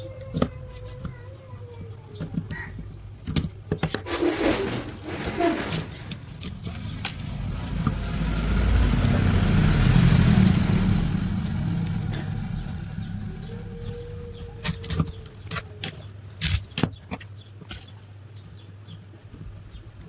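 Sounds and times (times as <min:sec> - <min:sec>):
low rumbling noise: 0:04.1 - 0:15.2.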